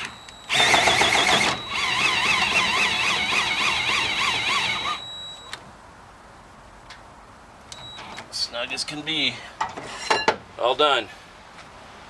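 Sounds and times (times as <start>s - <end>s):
cordless drill whining: 0.0s - 5.6s.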